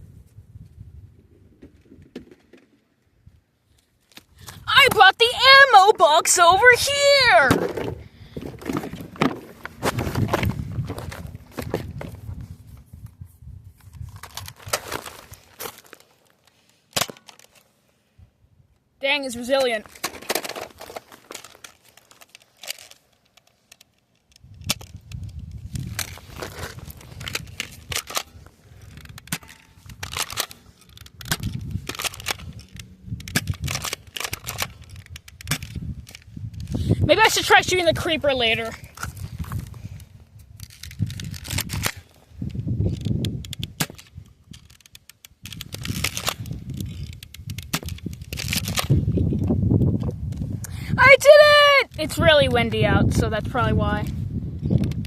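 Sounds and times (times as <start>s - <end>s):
wind rumbling on microphone: 0.0s - 2.2s, 6.8s - 15.4s, 24.4s - 30.2s, 31.1s - 44.7s, 45.4s - 55.0s
short clicks and crunches: 19.5s - 36.8s, 38.6s - 50.5s.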